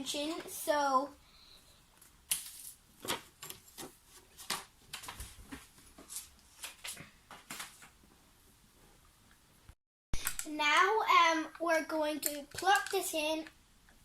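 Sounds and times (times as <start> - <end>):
small plastic parts clicking: 10.2 - 10.5, 12.2 - 13.6.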